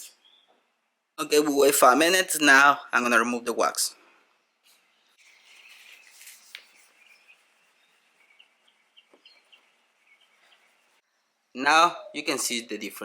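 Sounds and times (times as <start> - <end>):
bird chirps: 0.0 - 0.6, 4.5 - 12.3
towel rubbing plastic lens: 4.6 - 11.0.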